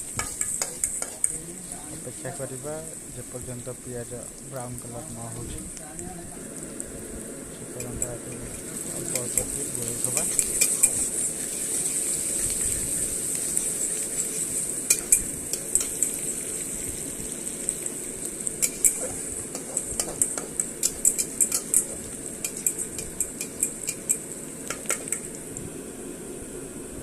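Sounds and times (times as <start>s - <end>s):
spatula scraping a pan: 0.0s - 1.7s, 7.8s - 16.6s, 18.6s - 25.2s
onions sizzling in oil: 0.0s - 27.0s.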